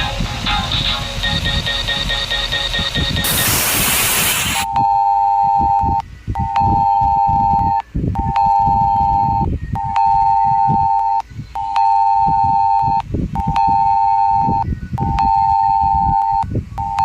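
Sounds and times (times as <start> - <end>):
long alarm beeps: 4.5 - 17.0
low rumbling noise: 5.5 - 17.0.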